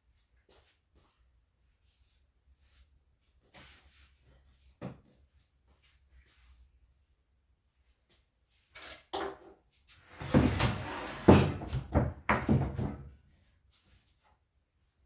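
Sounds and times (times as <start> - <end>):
plywood sheet scraping: 10.0 - 13.1
loud wooden thuds: 11.2 - 13.1.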